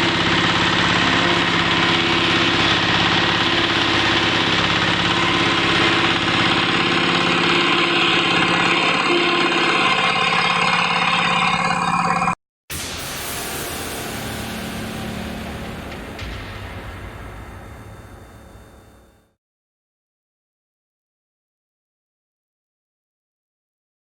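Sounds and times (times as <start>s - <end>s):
wood chipper engine running: 0.0s - 12.4s, 13.6s - 19.1s.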